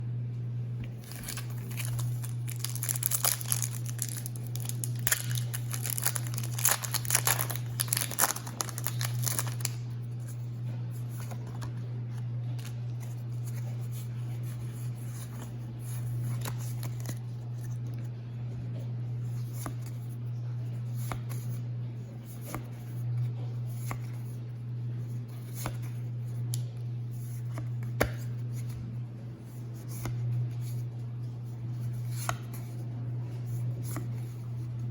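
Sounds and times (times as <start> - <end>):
steady low hum: 0.0 - 34.9
cards clicking and sliding: 0.8 - 9.8, 21.0 - 21.4, 31.9 - 32.7
foil wrapper crinkling and tearing: 1.0 - 9.9.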